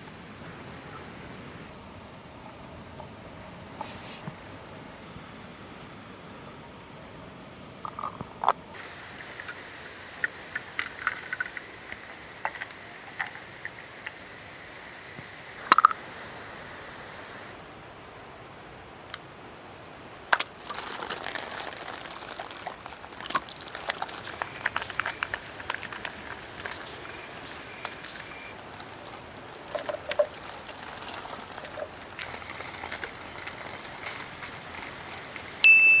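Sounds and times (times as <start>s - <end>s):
water pouring and trickling: 20.4s - 35.6s.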